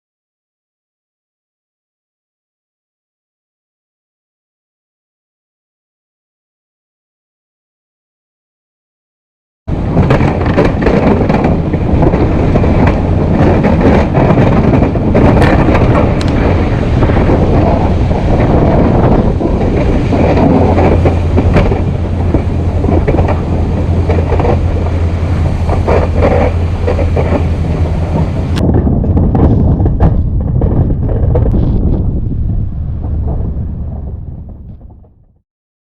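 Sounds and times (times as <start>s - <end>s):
snow plow engine hum: 9.7s - 35.1s
knocks and rattles: 9.8s - 35.4s.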